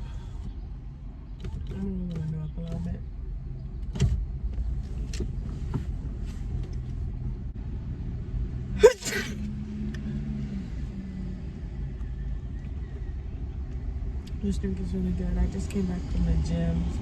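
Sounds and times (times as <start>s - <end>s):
woman sneezing: 8.8s - 9.4s.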